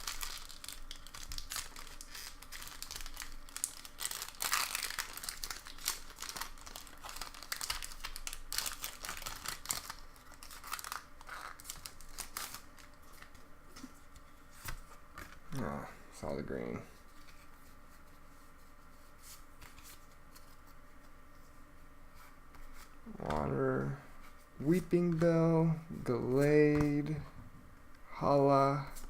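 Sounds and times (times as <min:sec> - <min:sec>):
foil wrapper crinkling and tearing: 0:00.0 - 0:13.4.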